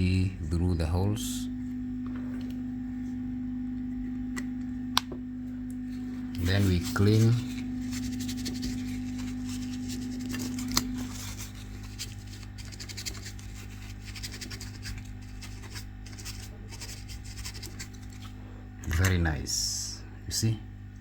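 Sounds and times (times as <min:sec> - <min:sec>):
electrical hum: 0:00.0 - 0:21.0
scrubbing circuit board: 0:06.4 - 0:18.2.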